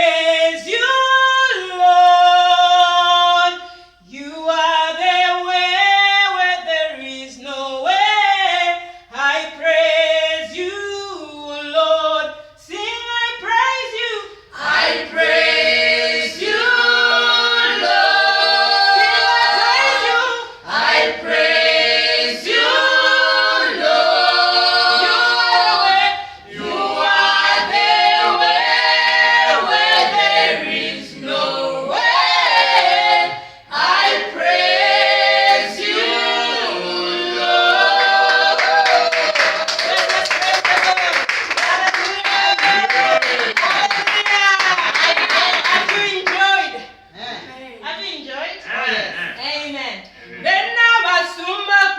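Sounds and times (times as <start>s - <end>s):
choir singing in harmony: 14.5s - 39.8s.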